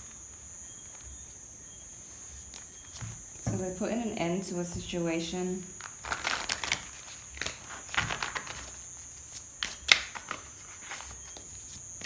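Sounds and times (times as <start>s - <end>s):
cards snapping and tapping: 9.6s - 11.5s.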